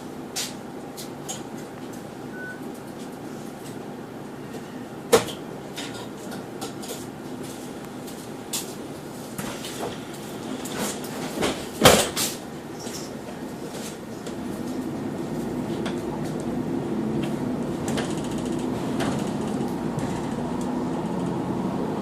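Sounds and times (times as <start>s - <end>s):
bus running hum: 0.0s - 22.0s
sharp knocks and rattles: 17.9s - 21.4s.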